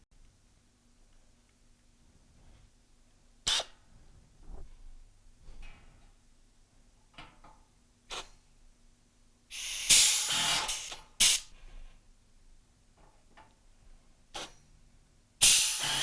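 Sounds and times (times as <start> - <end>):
compressed-air hiss: 9.5 - 11.5, 15.4 - 16.0.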